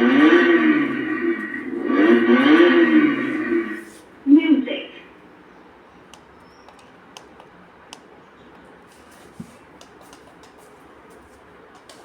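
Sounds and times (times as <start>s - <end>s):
light sharp clicks and taps: 6.1s - 8.6s, 9.4s - 10.7s.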